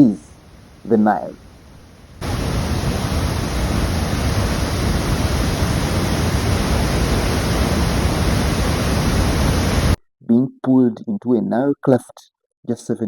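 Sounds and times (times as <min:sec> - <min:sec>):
river roaring through gorge: 0:01.4 - 0:10.0.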